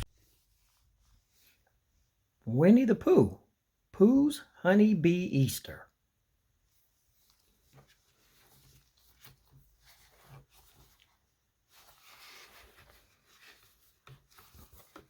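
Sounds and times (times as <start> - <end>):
paper rustle: 7.0 - 15.0.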